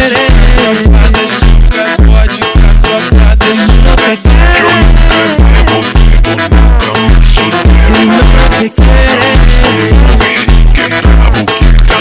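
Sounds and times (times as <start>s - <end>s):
music with booming bass beat: 0.0s - 12.0s.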